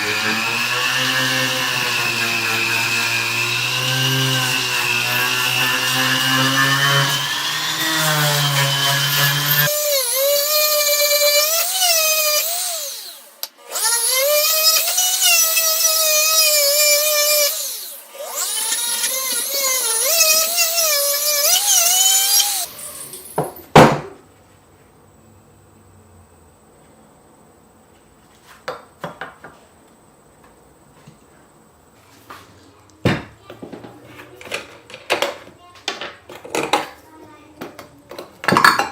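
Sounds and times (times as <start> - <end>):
rotary power tool whining: 0.0 - 23.6.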